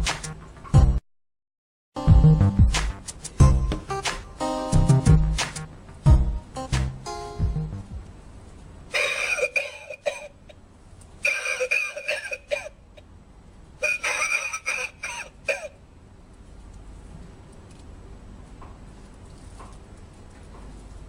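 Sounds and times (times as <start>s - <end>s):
recorded coughing: 8.9s - 10.6s, 11.2s - 12.8s, 13.8s - 15.8s.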